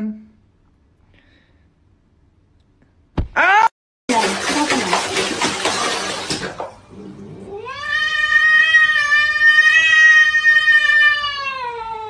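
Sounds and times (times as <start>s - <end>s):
cat yowling: 7.5s - 12.0s.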